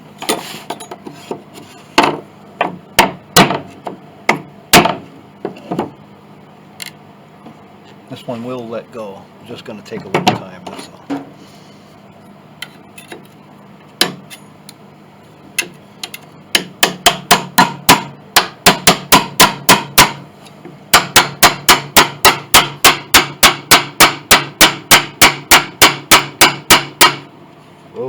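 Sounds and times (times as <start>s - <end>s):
hammer striking a wedge: 2.0s - 5.0s, 14.0s - 14.4s, 15.6s - 20.2s, 20.9s - 27.3s.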